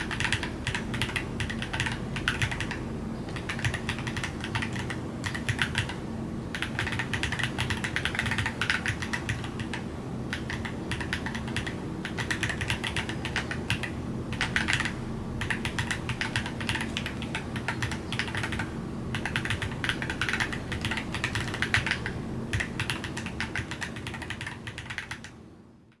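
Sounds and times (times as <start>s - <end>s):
typing on mechanical keyboard: 0.0s - 25.4s.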